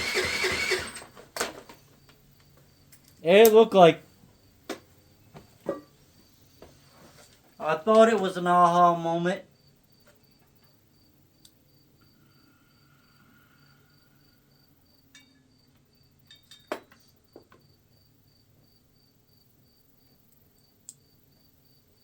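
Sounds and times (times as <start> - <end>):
cricket chirping: 3.9 - 6.7, 9.4 - 22.0.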